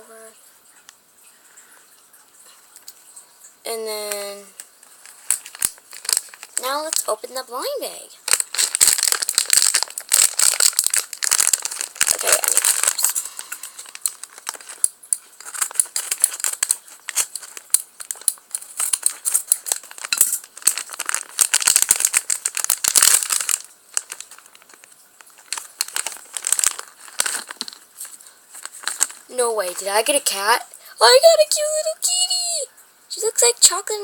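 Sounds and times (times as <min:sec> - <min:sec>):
plastic bag crinkling: 0:03.7 - 0:30.5.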